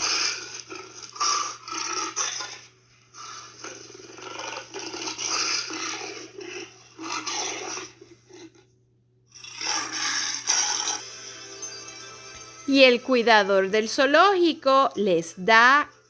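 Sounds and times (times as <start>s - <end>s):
lions growling and roaring: 0.0s - 8.6s, 9.4s - 11.0s.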